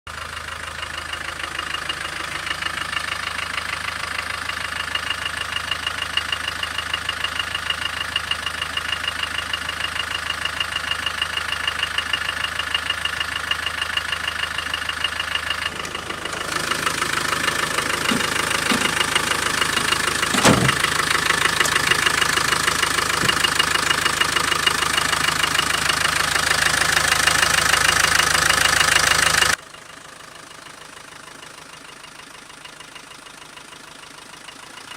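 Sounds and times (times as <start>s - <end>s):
diesel engine idling: 0.1s - 34.9s
ringing metallic engine knock: 15.4s - 24.4s
sharp thump: 20.3s - 20.8s.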